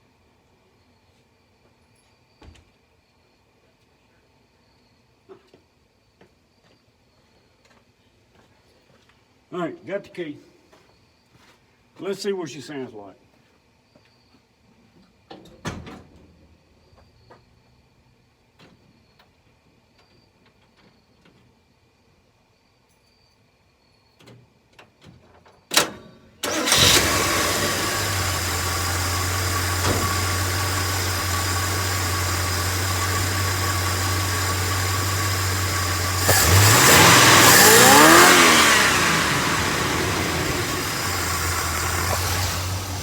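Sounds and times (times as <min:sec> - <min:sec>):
truck engine starting and idling: 0:25.8 - 0:43.0
truck engine revving: 0:26.5 - 0:43.0.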